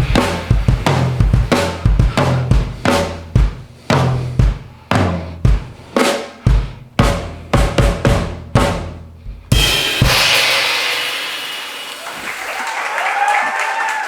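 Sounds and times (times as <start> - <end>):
cymbal crash ringing: 0.0 - 2.8, 9.5 - 13.6
bass drum and snare strokes: 0.0 - 13.3.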